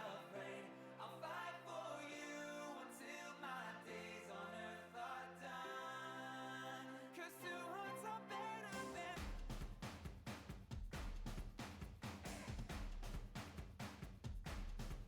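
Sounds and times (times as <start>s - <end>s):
person singing: 0.0s - 9.2s.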